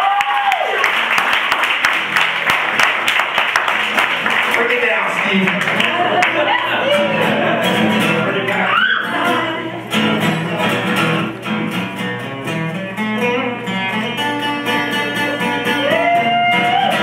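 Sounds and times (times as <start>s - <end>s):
blues guitar playing: 1.8s - 17.0s
rising vocal cry: 8.6s - 9.7s.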